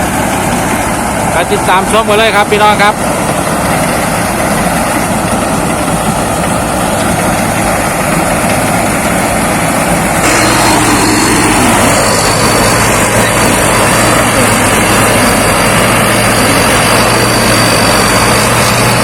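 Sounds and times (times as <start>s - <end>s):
combine harvester running: 0.0s - 19.0s
steady high whine: 0.0s - 19.0s.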